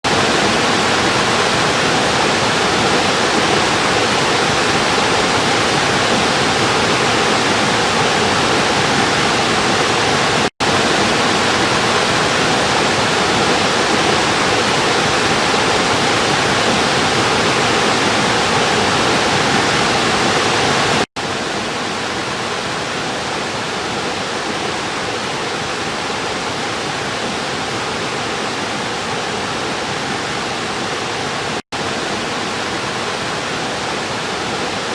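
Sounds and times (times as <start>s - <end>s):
river water rushing: 0.0s - 34.9s.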